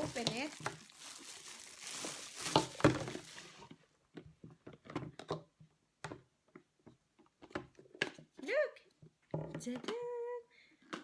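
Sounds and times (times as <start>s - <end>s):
wrap crinkling and rustling: 0.0s - 3.8s.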